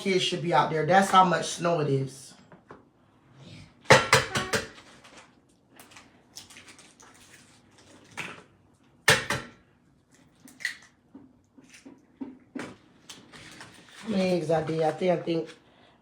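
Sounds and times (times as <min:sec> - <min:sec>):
dishes and utensils clattering: 0:03.9 - 0:05.0.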